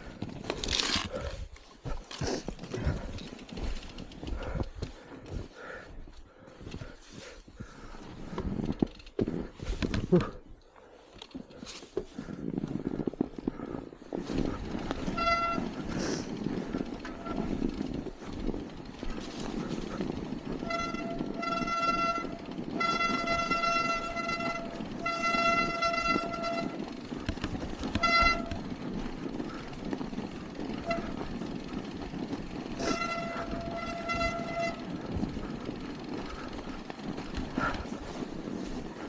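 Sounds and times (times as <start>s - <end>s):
tyres rumbling on rough trail: 0.0s - 39.0s
bike brakes squealing: 14.9s - 36.8s.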